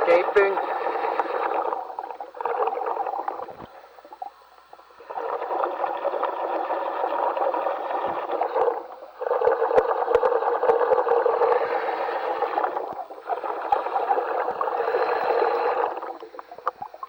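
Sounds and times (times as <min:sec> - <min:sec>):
exhaust bubbles gurgling: 0:00.0 - 0:17.0
diver breathing in helmet: 0:05.1 - 0:16.7.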